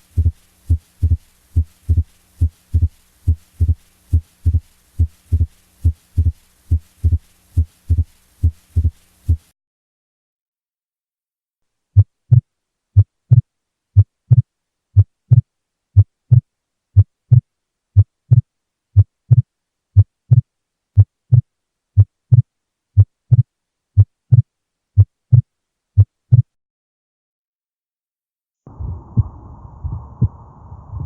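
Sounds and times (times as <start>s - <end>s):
heartbeat: 0.0s - 9.5s, 12.0s - 12.4s, 13.0s - 13.4s, 14.0s - 16.4s, 17.0s - 17.4s, 18.0s - 18.4s, 19.0s - 20.4s, 21.0s - 21.4s, 22.0s - 26.6s, 28.7s - 31.0s.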